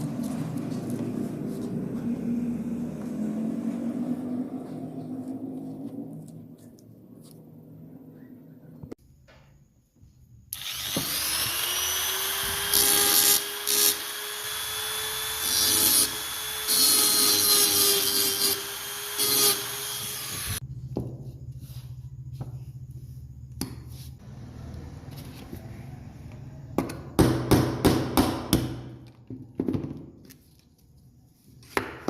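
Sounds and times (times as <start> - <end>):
electric power tool running: 10.5 - 20.6
tool grinding bursts: 10.6 - 20.6.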